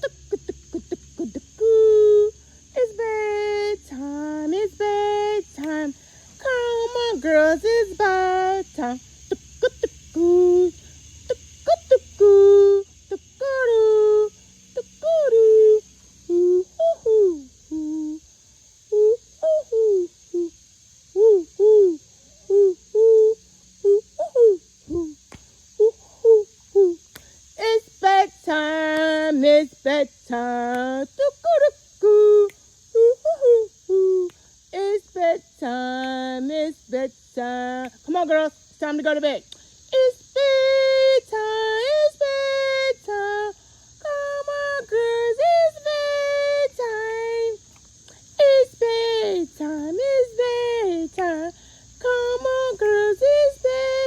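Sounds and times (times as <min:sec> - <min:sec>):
woman making cooing calls: 0:00.0 - 0:03.0, 0:06.4 - 0:10.8, 0:11.7 - 0:18.3, 0:18.9 - 0:25.2, 0:25.8 - 0:27.0, 0:31.3 - 0:34.3
crickets chirring: 0:00.0 - 0:54.0
woman singing wordless tune: 0:00.0 - 0:54.0.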